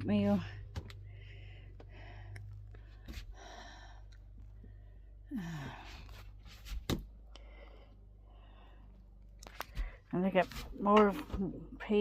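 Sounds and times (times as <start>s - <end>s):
low hum: 0.0s - 12.0s
woman sighing: 5.2s - 6.1s.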